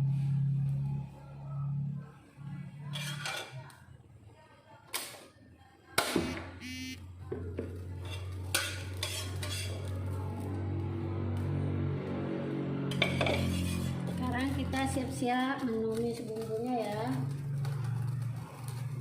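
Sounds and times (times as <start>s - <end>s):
cookware clinking and clattering: 2.9s - 3.7s, 7.5s - 9.9s, 12.9s - 14.2s.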